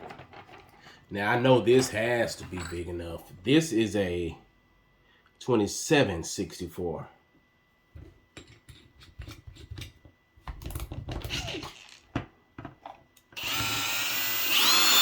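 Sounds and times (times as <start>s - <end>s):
electric drill whining: 13.4s - 15.0s.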